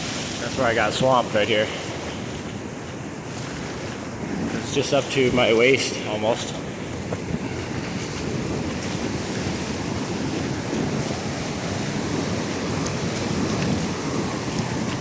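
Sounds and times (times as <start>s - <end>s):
surf washing onto beach: 0.0s - 15.0s
wind buffeting microphone: 0.0s - 15.0s.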